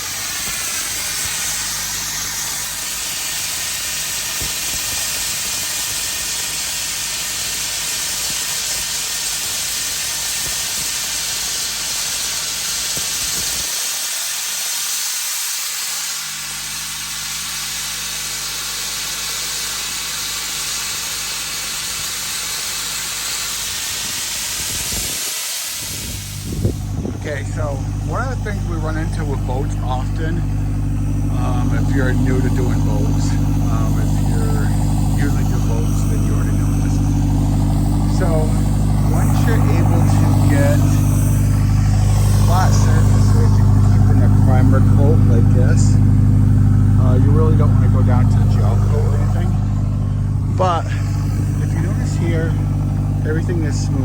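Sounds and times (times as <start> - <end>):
blasting nozzle hissing: 0.0 - 54.0
low engine hum: 23.5 - 54.0.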